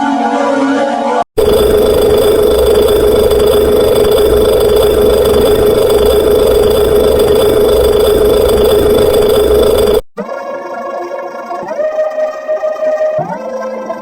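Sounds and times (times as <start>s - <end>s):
electronic buzzing drone: 1.4s - 10.1s
low pulsing hum: 1.4s - 10.1s.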